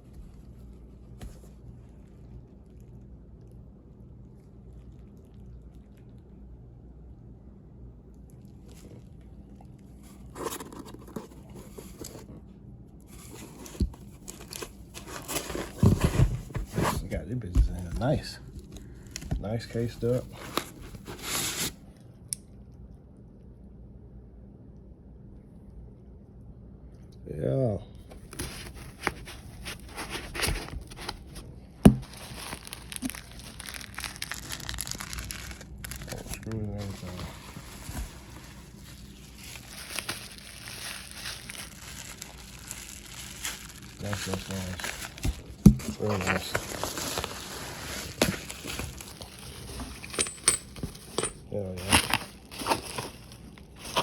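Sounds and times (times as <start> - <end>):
steady low hum: 0.0 - 54.0
packaging rustling and scraping: 10.0 - 12.5, 13.1 - 21.8, 28.1 - 54.0.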